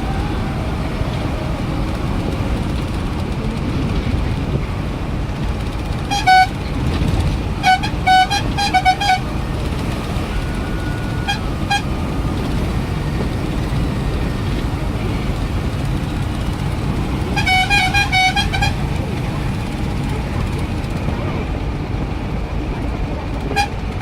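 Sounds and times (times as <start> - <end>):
traffic rumble: 0.0 - 24.0
vehicle horns honking: 6.0 - 14.0, 16.5 - 19.7, 23.5 - 24.0.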